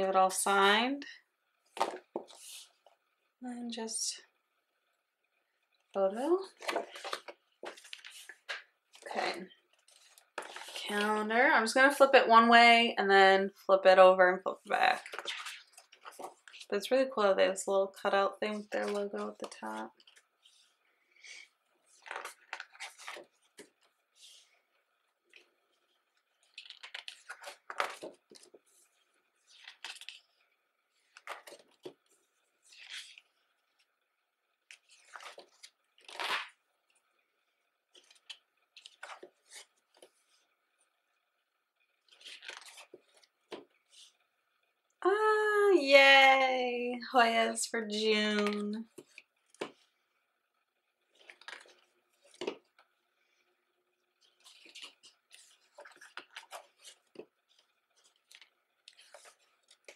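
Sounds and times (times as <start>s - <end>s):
calendar pages turning: 1.7s - 2.9s, 6.2s - 11.3s, 14.7s - 17.0s, 18.4s - 33.9s, 34.6s - 37.0s, 37.9s - 40.9s, 42.0s - 44.2s, 47.4s - 50.0s, 51.1s - 53.5s, 54.1s - 59.9s
small scrapes: 1.8s - 3.0s, 6.5s - 11.1s, 14.9s - 16.7s, 18.5s - 33.8s, 34.7s - 36.6s, 37.9s - 40.5s, 42.0s - 44.3s, 54.2s - 59.9s
stiff paper rustling: 6.5s - 11.0s, 15.0s - 16.7s, 18.5s - 24.7s, 42.0s - 44.2s, 54.2s - 59.9s.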